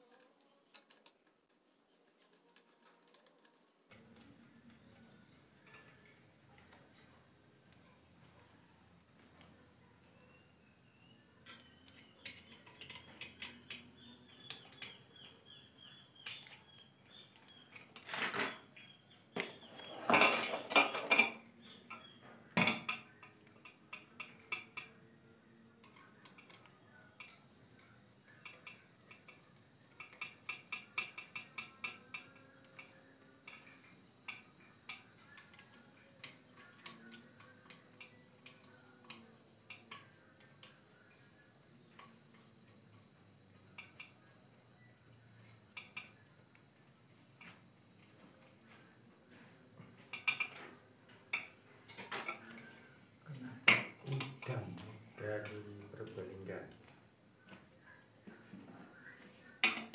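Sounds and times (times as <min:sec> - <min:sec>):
metallic clinks and clicks: 0:00.0 - 0:05.0, 0:11.4 - 0:15.0
faint steady high tone: 0:02.3 - 0:18.0, 0:18.8 - 0:59.9.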